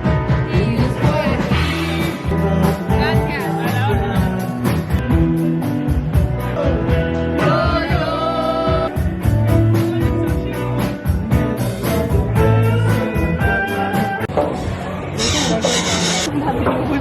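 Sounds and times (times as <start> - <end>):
steady drum beat: 0.0 - 14.3, 15.2 - 16.3
guitar: 0.0 - 17.0
person singing: 0.3 - 4.8.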